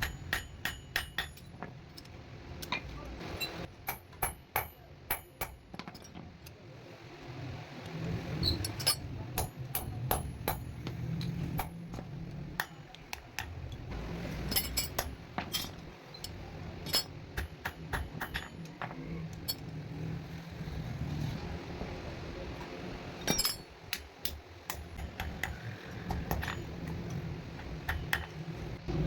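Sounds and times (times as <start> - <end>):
low hum: 25.7 - 29.0.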